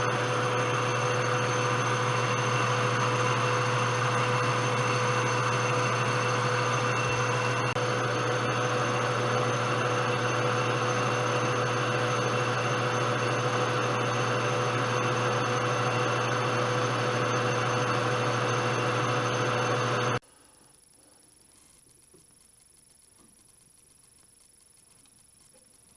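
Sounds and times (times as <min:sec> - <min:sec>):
high whines: 0:00.0 - 0:20.2
lathe humming: 0:00.0 - 0:20.2.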